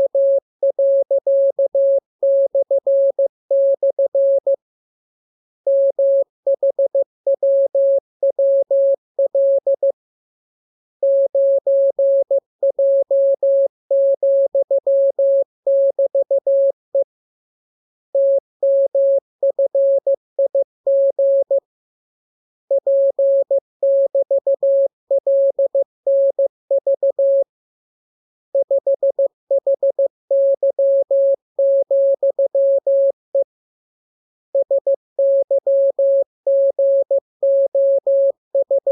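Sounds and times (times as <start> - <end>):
morse code beeps: 34.6 - 38.9.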